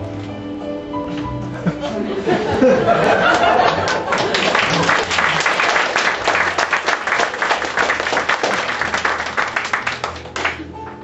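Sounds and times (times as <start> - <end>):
music: 0.0 - 11.0
audience applauding: 3.2 - 11.0.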